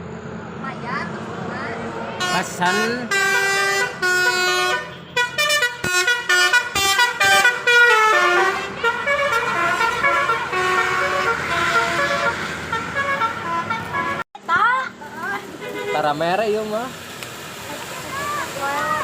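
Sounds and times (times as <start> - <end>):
bus horn playing notes: 2.2 - 14.2.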